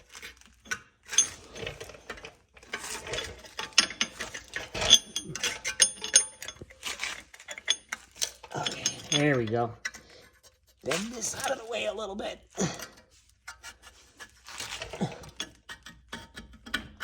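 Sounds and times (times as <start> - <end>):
metal tools clanking: 0.5 - 11.9, 12.6 - 13.2, 14.6 - 16.2
short metallic rings: 3.0 - 6.9, 7.5 - 9.7.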